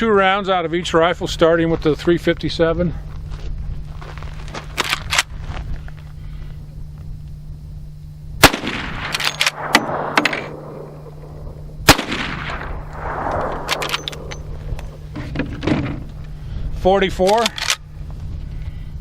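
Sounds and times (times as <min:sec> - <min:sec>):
rifle shots with rolling echo: 0:08.4 - 0:15.2
rifle action clicks: 0:08.5 - 0:10.6, 0:11.9 - 0:15.0, 0:17.2 - 0:17.8.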